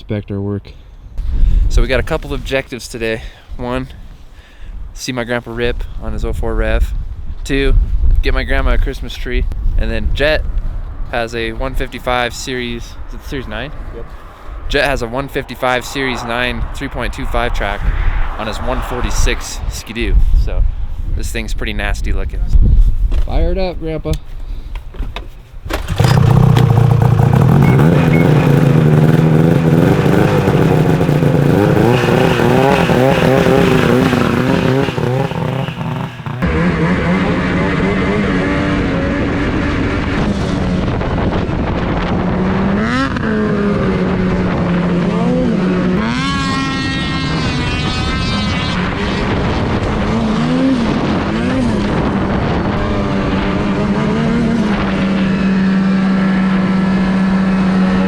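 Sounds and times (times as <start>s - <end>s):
snowmobile engine revving: 25.7s - 58.0s.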